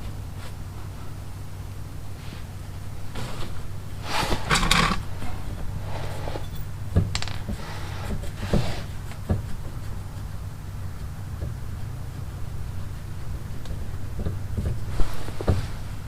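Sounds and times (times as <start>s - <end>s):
steady low hum: 0.0s - 16.0s
scraping rustle: 2.1s - 10.2s, 14.7s - 16.0s.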